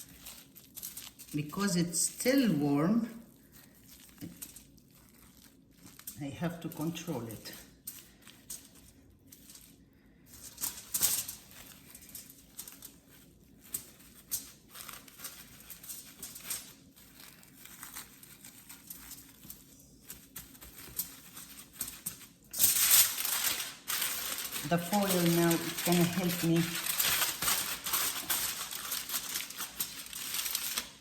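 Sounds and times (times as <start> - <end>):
plastic wrap crinkling: 0.0 - 31.0.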